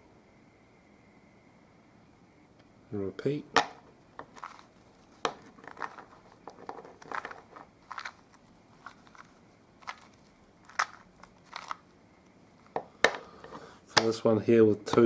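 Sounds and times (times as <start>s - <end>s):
puzzle cube plastic clacks: 3.6s - 11.9s.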